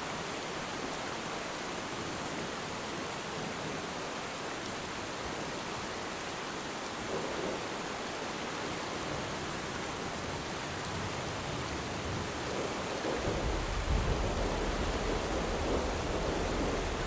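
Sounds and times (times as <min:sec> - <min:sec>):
rain falling on water: 0:00.0 - 0:17.0
distant thunder rumble: 0:11.0 - 0:17.0.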